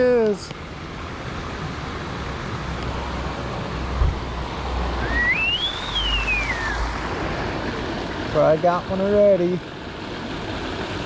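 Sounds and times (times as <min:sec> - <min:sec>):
road traffic rumble: 0:00.0 - 0:11.0
rising and falling whistle: 0:05.0 - 0:07.0.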